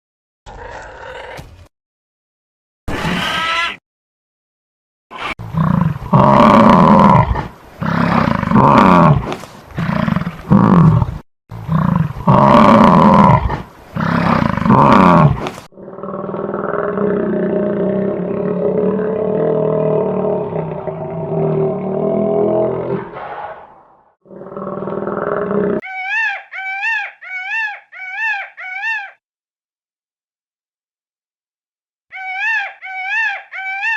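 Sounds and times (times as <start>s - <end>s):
wild animal crying: 3.0s - 3.8s, 25.2s - 29.2s, 32.1s - 33.9s
muffled continuous animal call: 25.8s - 29.2s, 32.1s - 33.9s.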